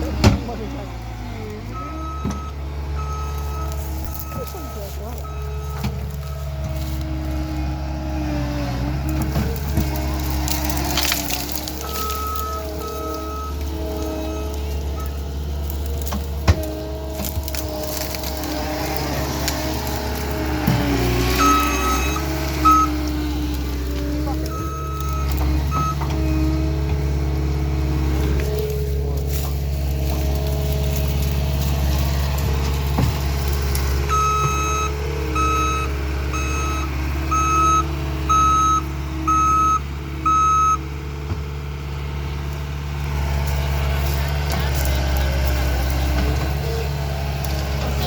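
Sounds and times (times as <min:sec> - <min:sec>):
loader engine running: 0:00.0 - 0:48.0
reverse alarm beeping: 0:01.7 - 0:06.5, 0:11.8 - 0:15.2, 0:21.3 - 0:23.3, 0:24.3 - 0:26.0, 0:34.1 - 0:40.8.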